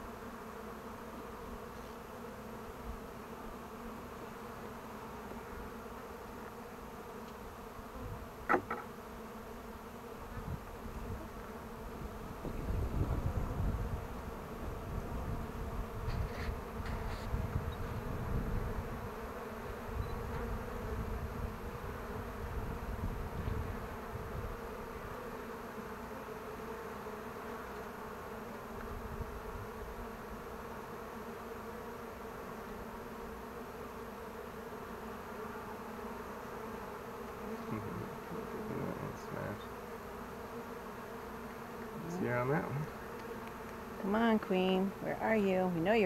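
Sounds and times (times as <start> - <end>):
honeybees buzzing: 0.0 - 46.0.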